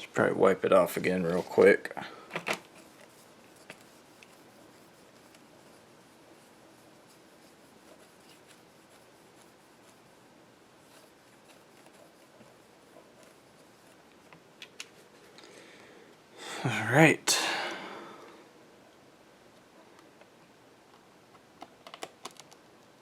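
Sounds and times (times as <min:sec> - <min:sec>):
cloth wiping a screen: 0:00.7 - 0:01.8, 0:02.7 - 0:15.4
light ticks of handling: 0:02.3 - 0:05.8, 0:10.9 - 0:16.2.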